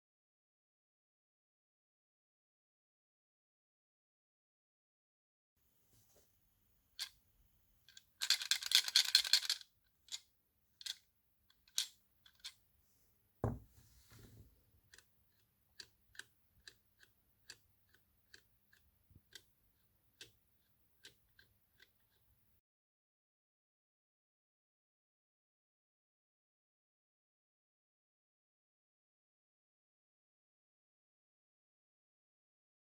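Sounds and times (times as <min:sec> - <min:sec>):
metal parts clicking: 0:07.9 - 0:10.2, 0:10.8 - 0:12.6
dull knock: 0:13.4 - 0:13.7.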